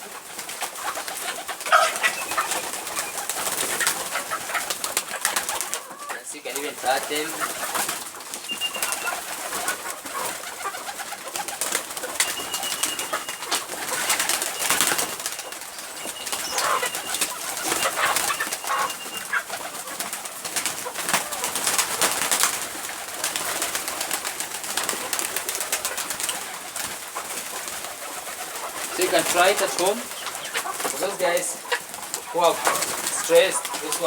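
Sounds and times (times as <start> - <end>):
pigeons cooing: 0.0 - 34.0.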